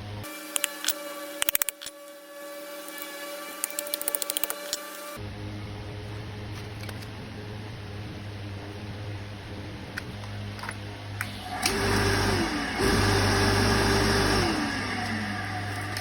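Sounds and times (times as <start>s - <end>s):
electric motor whining: 0.0s - 5.3s, 11.2s - 16.0s
low electrical hum: 0.0s - 16.0s.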